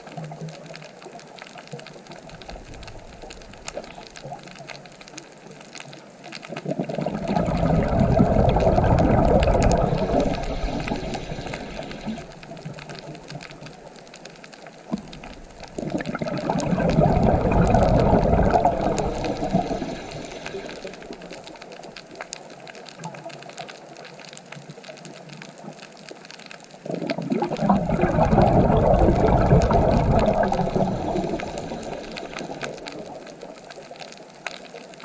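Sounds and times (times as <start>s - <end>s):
hiss of water: 6.6s - 13.9s, 14.9s - 23.1s, 26.9s - 35.0s
ocean waves washing in: 6.7s - 13.7s, 15.7s - 22.0s, 27.0s - 33.9s.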